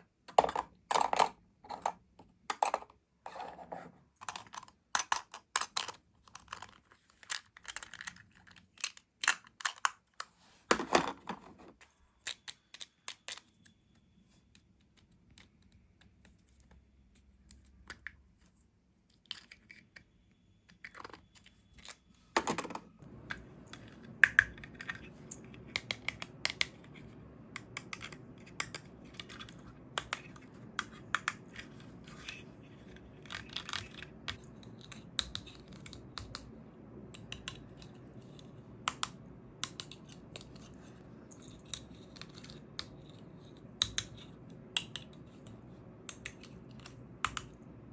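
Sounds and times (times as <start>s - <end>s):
plastic toy pieces clicking: 4.2s - 10.3s.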